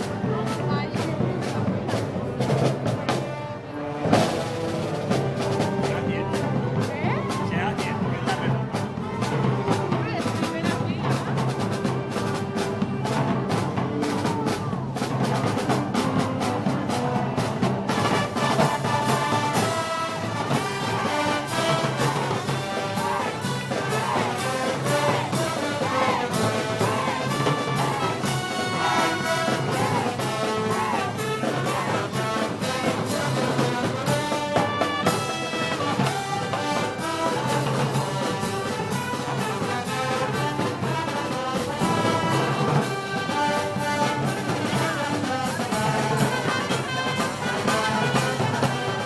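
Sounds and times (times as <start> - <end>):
trumpets and trombones melody: 1.7 - 49.0
drums and cymbals beat: 4.1 - 49.0.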